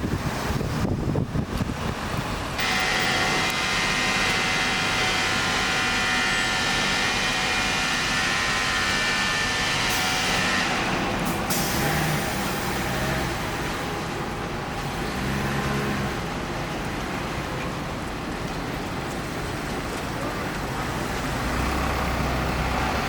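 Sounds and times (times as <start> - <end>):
heavy vehicle running: 0.0 - 23.0
street traffic: 0.0 - 23.0
high-pitched mechanical sound: 2.6 - 16.9.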